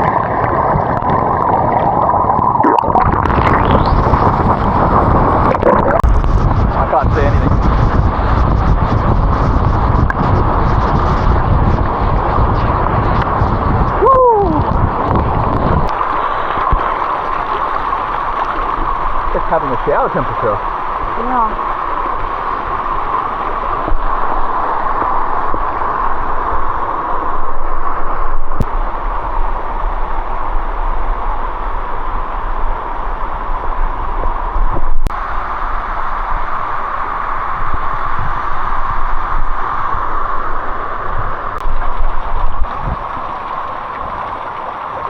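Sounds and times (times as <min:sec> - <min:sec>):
waterfall rushing: 0:00.0 - 0:09.3, 0:11.7 - 0:28.3, 0:35.2 - 0:45.0
low rumble: 0:00.0 - 0:19.5.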